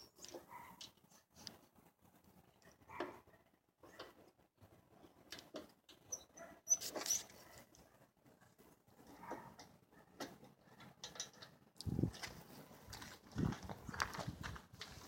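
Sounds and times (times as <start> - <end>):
short high squeaks: 6.0 - 7.4.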